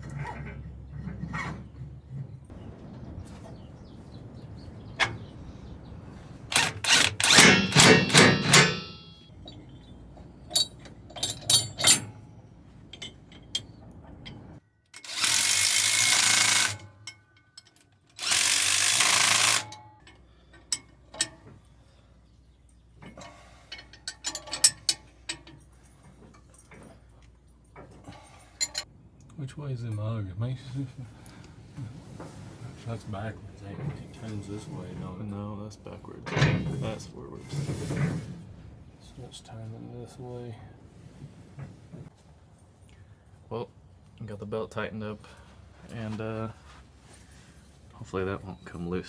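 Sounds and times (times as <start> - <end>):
power tool rattling: 6.4 - 9.2, 15.0 - 17.0, 18.1 - 19.8
metal clicks and clanks: 6.4 - 21.7, 22.8 - 28.9, 36.2 - 37.0.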